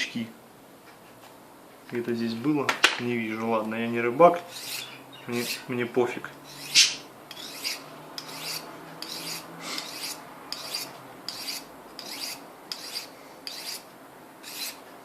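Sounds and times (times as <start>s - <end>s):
knife rasping on ceramic sharpener: 4.5s - 5.6s, 6.5s - 14.8s.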